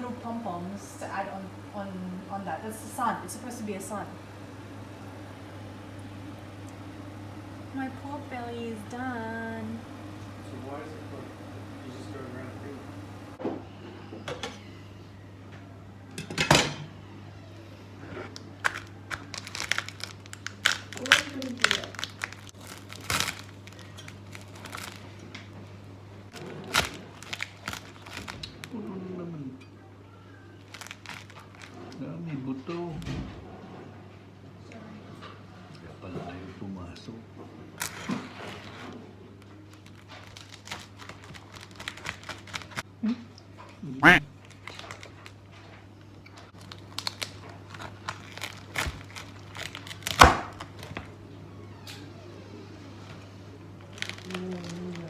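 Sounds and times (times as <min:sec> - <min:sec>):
steady low hum: 0:00.0 - 0:16.2
crinkling and crackling: 0:18.2 - 0:25.7, 0:26.3 - 0:28.8, 0:30.6 - 0:32.0, 0:37.8 - 0:42.8, 0:44.4 - 0:51.2, 0:53.8 - 0:55.0
knife cracking roast pork crackling: 0:46.6 - 0:51.0.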